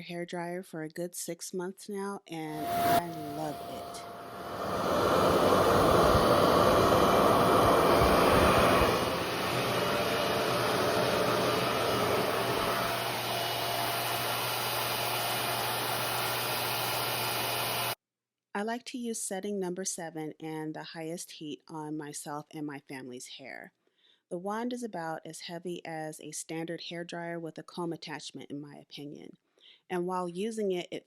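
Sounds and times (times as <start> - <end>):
faint hum: 2.5 - 13.9
hair dryer blower rushing: 2.6 - 18.0.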